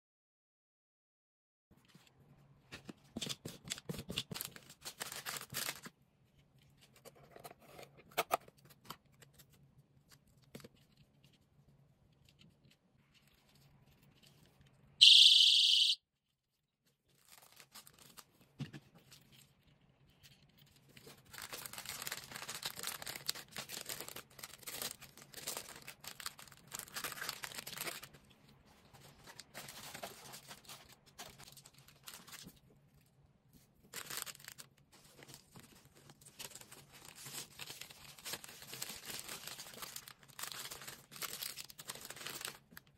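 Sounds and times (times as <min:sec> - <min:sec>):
plastic packaging crinkling: 0:04.2 - 0:06.0, 0:17.1 - 0:18.4, 0:19.0 - 0:28.2, 0:33.8 - 0:42.9
shrill personal safety alarm: 0:15.0 - 0:16.0.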